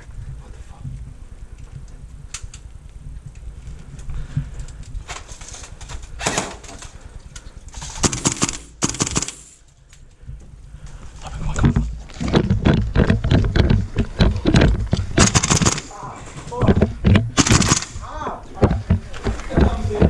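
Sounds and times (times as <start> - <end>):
rustle of movement and gear: 0.0 - 8.2
airsoft rifle firing: 6.2 - 6.6, 7.9 - 9.6, 15.2 - 16.0, 17.1 - 18.0.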